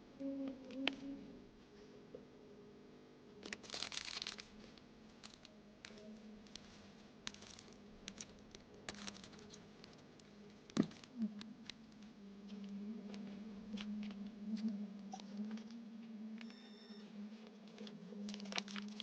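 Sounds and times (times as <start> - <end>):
paper packaging crinkling: 3.4 - 11.2, 17.7 - 19.0
masking tape and paper clicks: 3.4 - 12.0, 17.6 - 19.0.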